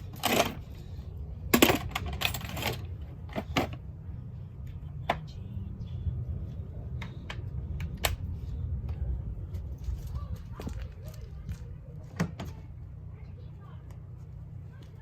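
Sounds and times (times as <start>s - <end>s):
hand tools clicking and knocking: 0.0s - 0.7s
steady low hum: 0.0s - 15.0s.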